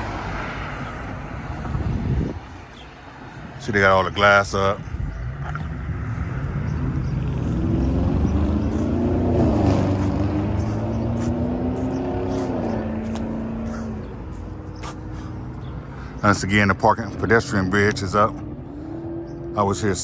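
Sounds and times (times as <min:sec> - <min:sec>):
motor vehicle passing by: 0:00.0 - 0:20.0.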